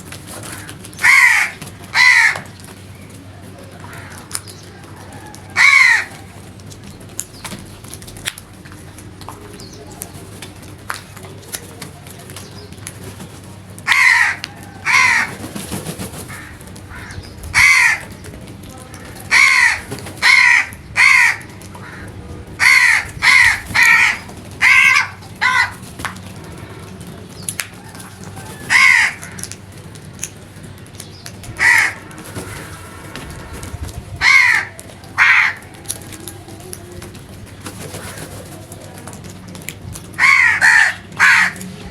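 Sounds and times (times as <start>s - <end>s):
crows cawing: 0.3s - 2.7s, 3.6s - 6.5s, 13.8s - 18.3s, 19.0s - 25.9s, 27.8s - 29.8s, 31.5s - 36.4s, 40.2s - 41.9s.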